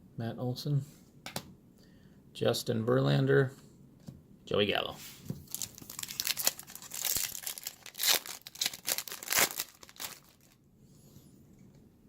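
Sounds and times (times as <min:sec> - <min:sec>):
foil wrapper crinkling and tearing: 0:05.4 - 0:10.6.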